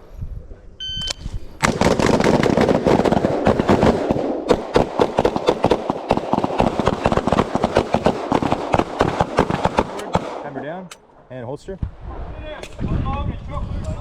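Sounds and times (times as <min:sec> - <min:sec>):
rapid gunfire: 0:01.6 - 0:10.5.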